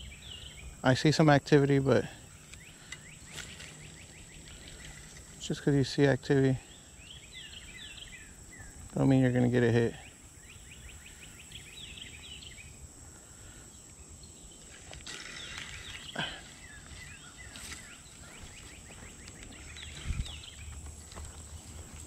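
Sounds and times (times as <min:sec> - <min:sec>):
outdoor background noise: 0:00.0 - 0:22.0
songbirds chirping: 0:00.0 - 0:22.0.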